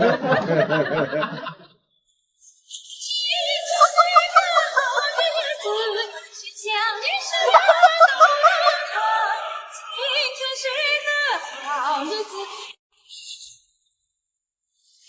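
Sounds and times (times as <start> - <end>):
song with high-pitched female vocal: 3.2 - 12.8.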